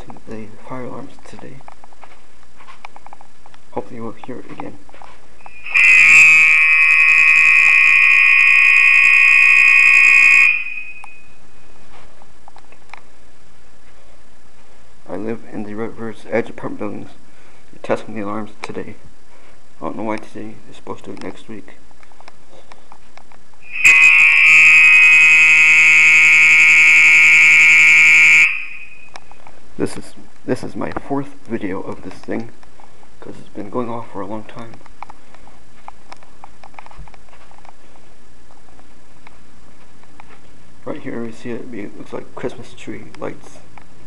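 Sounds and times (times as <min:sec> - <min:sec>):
fire alarm horn: 0:05.4 - 0:11.4, 0:23.6 - 0:29.2.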